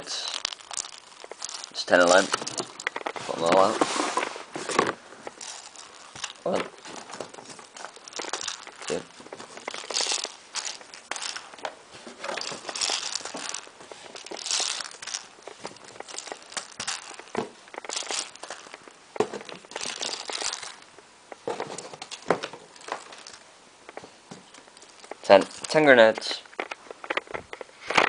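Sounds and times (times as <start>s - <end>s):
packaging crinkling and rustling: 0.0s - 28.0s.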